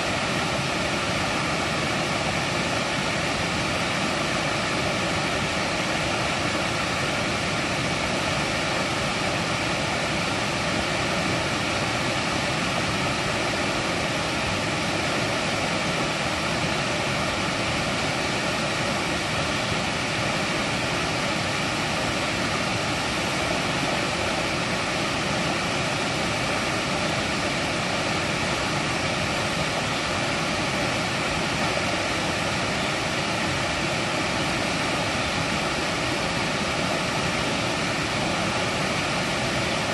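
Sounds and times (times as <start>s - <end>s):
stream water rushing over rocks: 0.0s - 39.9s.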